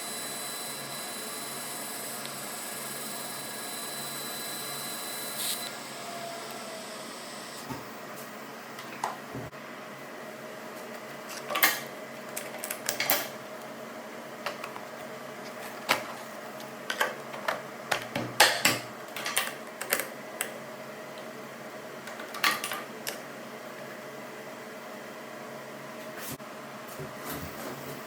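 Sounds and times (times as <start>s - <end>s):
steady hum: 0.0s - 10.2s.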